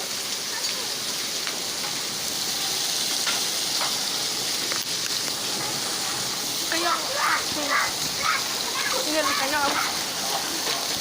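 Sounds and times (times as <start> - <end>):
rain pouring: 0.0 - 11.0
hail taps: 3.1 - 11.0.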